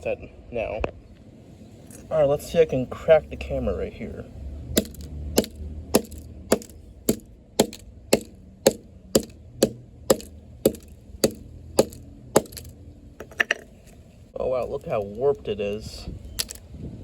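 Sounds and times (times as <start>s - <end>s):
hammer knocking on phone: 4.8s - 12.7s.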